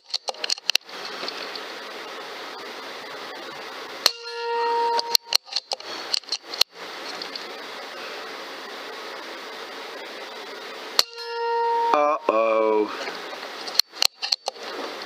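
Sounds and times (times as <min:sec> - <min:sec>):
metallic clicks of rifle action: 0:13.7 - 0:14.6.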